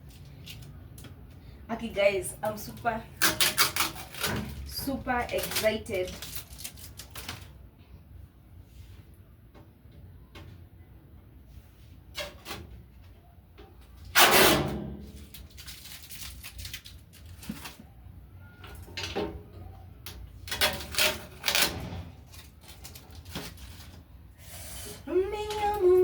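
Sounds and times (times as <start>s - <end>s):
packaging rustling and scraping: 2.6s - 7.6s, 15.0s - 19.0s, 20.4s - 24.3s.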